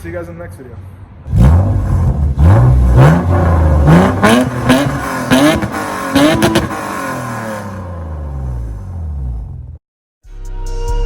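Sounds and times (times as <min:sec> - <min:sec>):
car engine revving and idling: 0:01.3 - 0:09.8.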